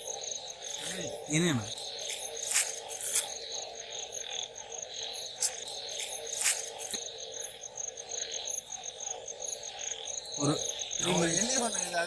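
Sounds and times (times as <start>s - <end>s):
night insects chirping: 0.0s - 12.0s.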